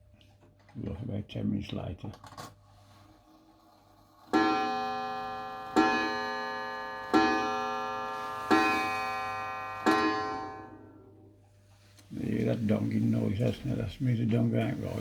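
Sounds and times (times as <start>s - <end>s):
clock striking on gong: 4.3s - 11.2s.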